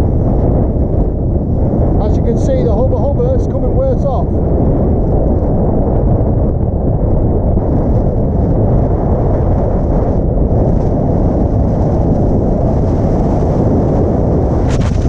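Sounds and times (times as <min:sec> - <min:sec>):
strong wind buffeting microphone: 0:00.0 - 0:15.0.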